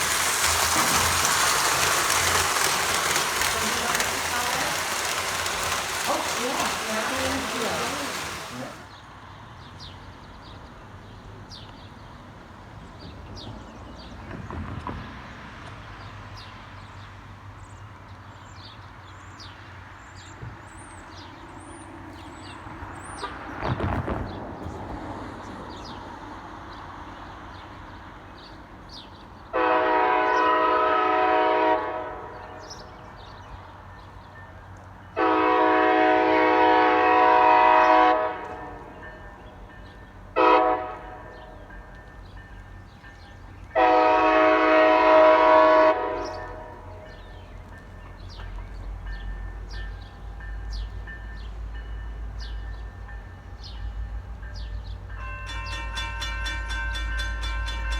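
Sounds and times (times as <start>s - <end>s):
locomotive air horn blasts: 29.5s - 32.7s, 35.2s - 38.9s, 40.4s - 41.3s, 43.8s - 47.0s.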